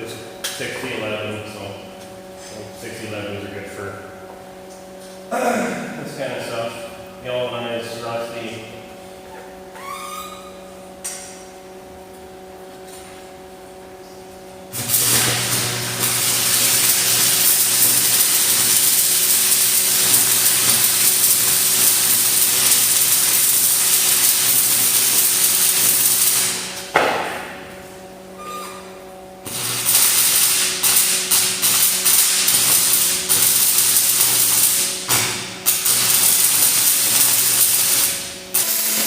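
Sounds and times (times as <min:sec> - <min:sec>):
welding arc crackling and hissing: 0:14.7 - 0:27.8, 0:29.4 - 0:39.0.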